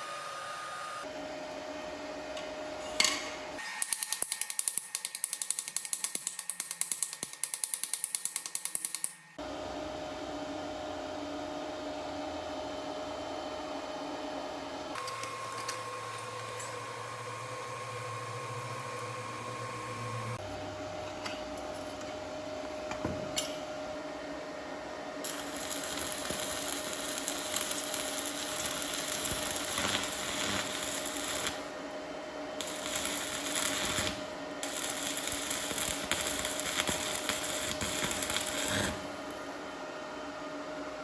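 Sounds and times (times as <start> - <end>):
welding arc crackling: 25.2 - 31.8, 32.5 - 39.5.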